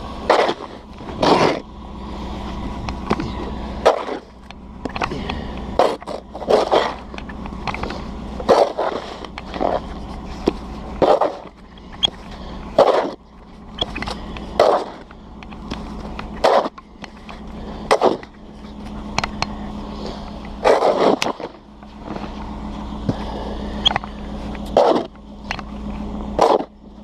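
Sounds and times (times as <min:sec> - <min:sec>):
snow shovel scraping pavement: 0:00.2 - 0:02.6, 0:03.2 - 0:04.3, 0:05.1 - 0:15.1, 0:15.8 - 0:19.1, 0:19.9 - 0:23.6, 0:24.2 - 0:25.1.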